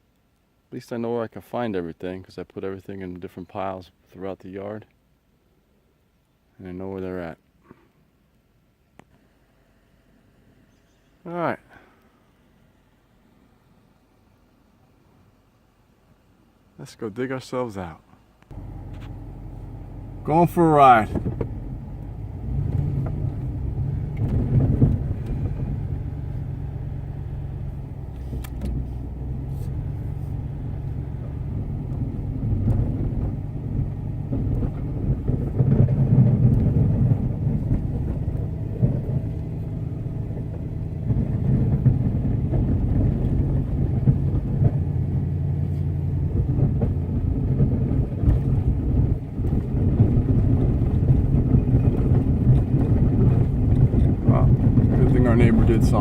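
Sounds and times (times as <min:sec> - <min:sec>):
pickup truck engine driving off: 0:18.5 - 0:56.0.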